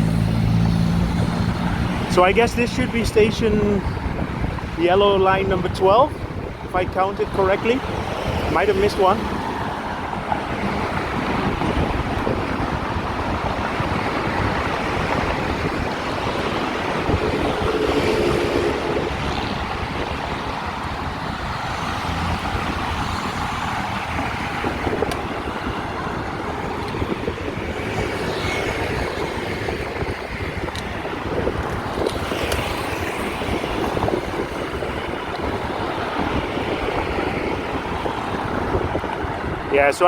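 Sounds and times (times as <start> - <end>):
vehicle passing loudly: 0.0 - 5.7, 7.3 - 39.8
road traffic: 0.0 - 40.0
wind on microphone: 0.0 - 40.0.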